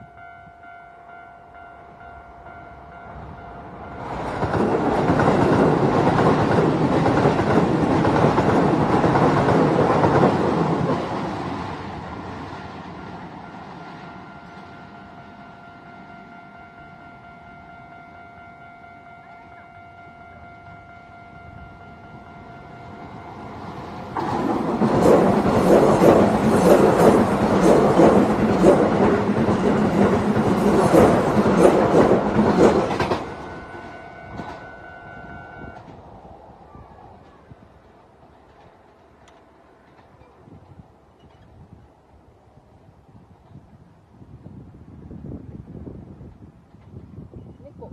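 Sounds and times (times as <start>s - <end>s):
level crossing warning bell: 0.0s - 4.8s, 12.9s - 24.2s, 32.4s - 35.8s
train wheels on rails: 2.8s - 16.4s, 21.8s - 44.0s.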